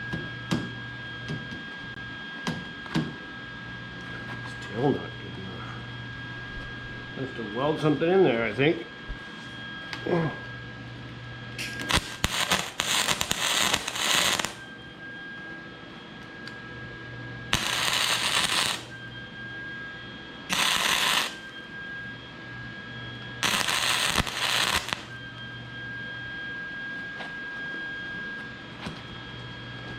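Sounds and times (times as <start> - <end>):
steady low hum: 8.9 - 15.0, 17.0 - 25.8
welding arc crackling: 11.6 - 14.6, 17.5 - 18.9, 20.5 - 21.5, 23.4 - 25.2.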